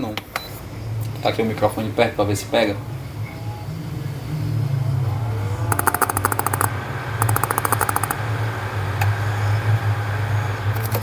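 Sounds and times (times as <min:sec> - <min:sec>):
projector crackling clicks: 0:05.7 - 0:08.2.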